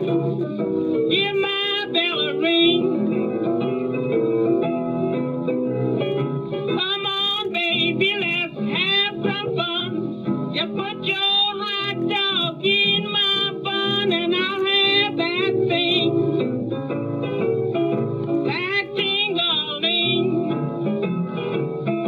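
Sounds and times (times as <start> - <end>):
piano: 0.0 - 22.0
woman singing blues with vibrato: 1.1 - 3.0, 6.7 - 10.0, 10.6 - 16.2, 18.4 - 20.6.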